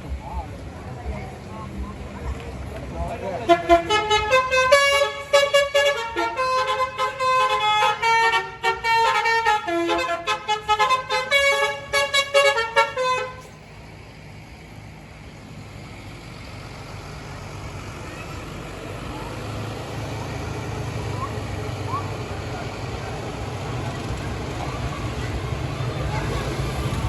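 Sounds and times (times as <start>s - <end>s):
vehicle engine rumble: 0.0s - 27.0s
musical multi-tone bus horn: 3.3s - 13.7s, 18.6s - 27.0s.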